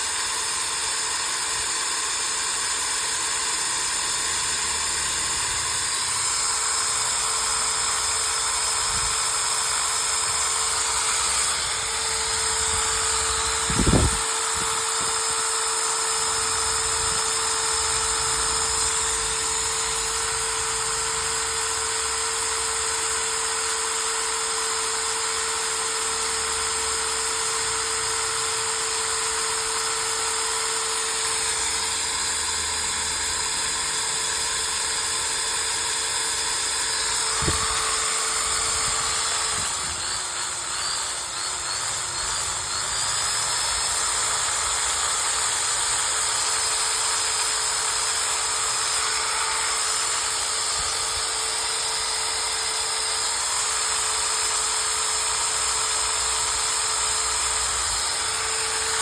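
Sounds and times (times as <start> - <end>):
drill click: 0.0 - 59.0
electric drill motor whining: 0.0 - 59.0.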